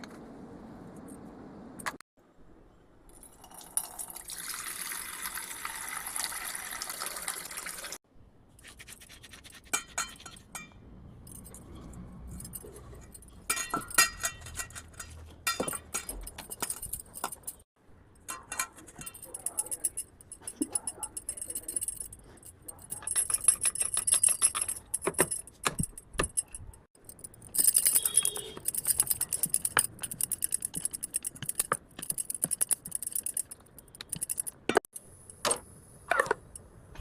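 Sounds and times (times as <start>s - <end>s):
metal utensils clinking and rattling: 9.6s - 34.7s.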